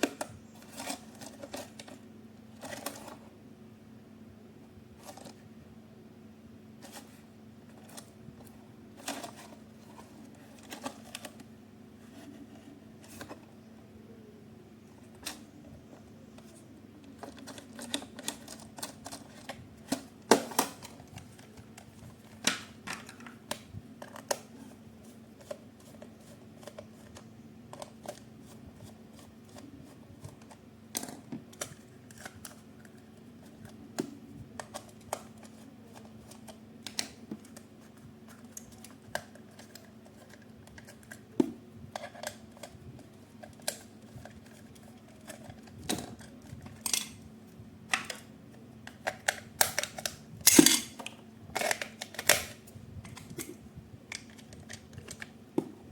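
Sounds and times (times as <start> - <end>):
faint steady hum: 0.0 - 55.9.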